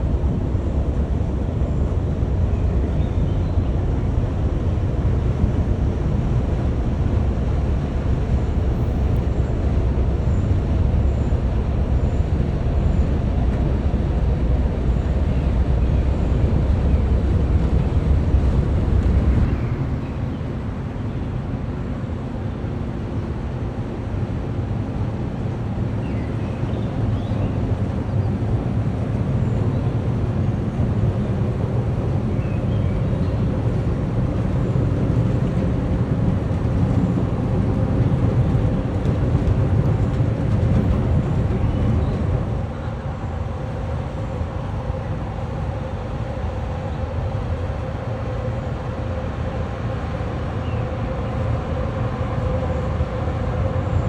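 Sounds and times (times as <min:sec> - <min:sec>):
ship engine drone: 0:26.9 - 0:54.0.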